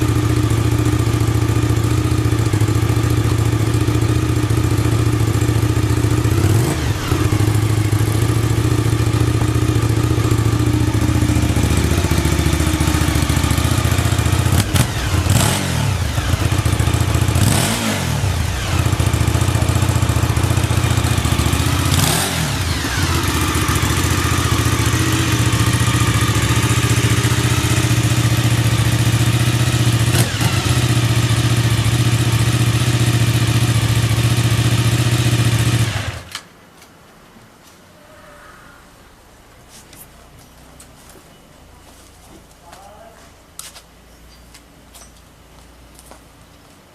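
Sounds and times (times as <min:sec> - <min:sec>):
motorcycle engine idling: 0:00.0 - 0:36.3
engine revving: 0:00.0 - 0:36.4.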